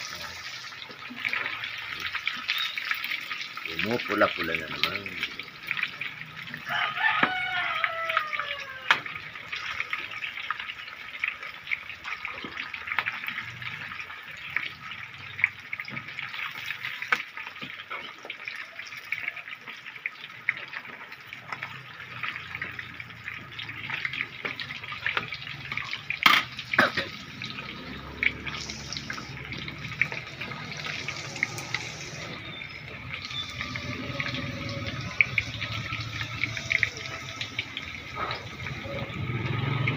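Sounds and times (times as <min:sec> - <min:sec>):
meat deep-frying in oil: 0:00.0 - 0:39.9
rooster crowing: 0:06.6 - 0:09.1.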